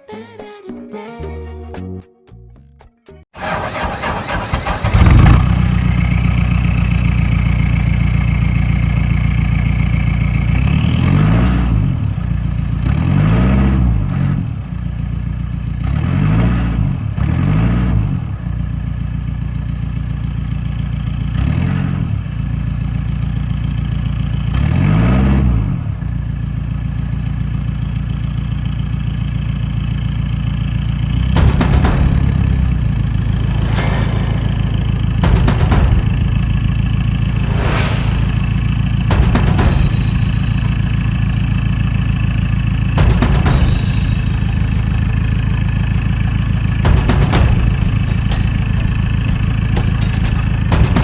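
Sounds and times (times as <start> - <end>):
vehicle engine idling and revving: 3.4 - 51.0.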